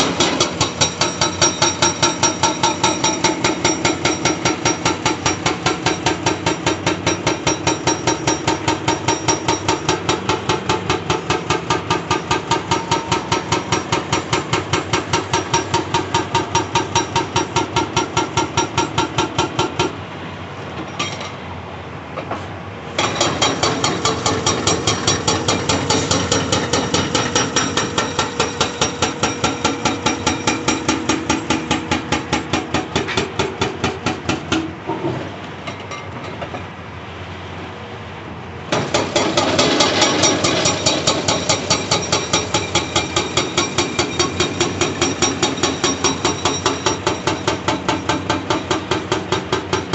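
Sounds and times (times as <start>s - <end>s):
hydraulic breaker hammering rock: 0.0s - 20.0s, 23.0s - 35.1s, 38.7s - 49.9s.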